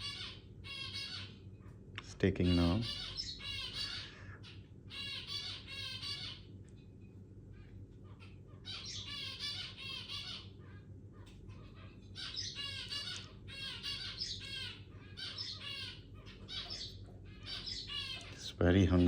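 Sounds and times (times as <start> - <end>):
finch chick begging calls: 0.0 - 1.3, 2.4 - 6.4, 8.6 - 10.6, 11.6 - 19.0.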